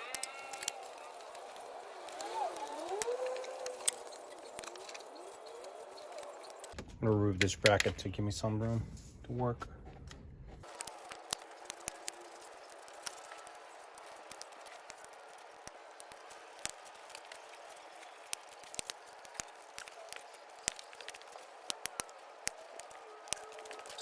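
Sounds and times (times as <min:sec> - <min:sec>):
hand tools tapping on metal: 0:00.0 - 0:05.5.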